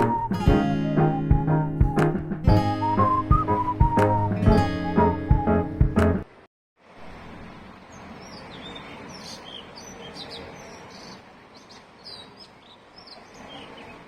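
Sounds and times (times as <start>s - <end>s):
outdoor background hiss: 0.0s - 14.0s
small birds chirping: 7.9s - 14.0s.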